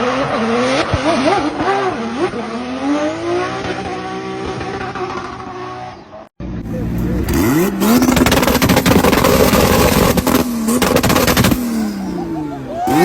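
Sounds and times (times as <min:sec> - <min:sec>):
car engine revving: 0:00.0 - 0:13.0
exhaust crackling pops: 0:06.9 - 0:11.9.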